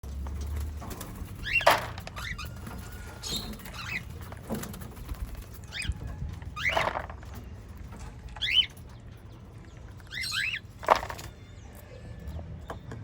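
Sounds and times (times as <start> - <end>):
parrots chirping: 1.3 - 4.3, 5.5 - 7.1, 8.3 - 9.1, 10.0 - 11.0.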